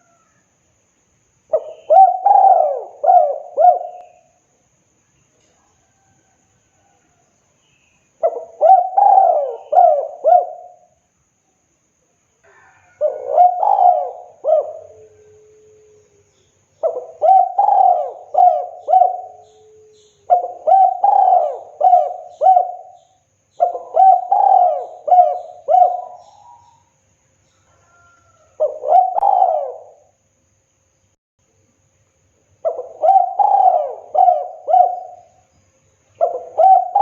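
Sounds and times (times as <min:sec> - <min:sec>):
dove cooing: 0:01.5 - 0:04.3, 0:08.2 - 0:10.9, 0:12.5 - 0:16.0, 0:16.8 - 0:26.9, 0:27.8 - 0:30.2, 0:32.6 - 0:35.4, 0:36.2 - 0:37.0.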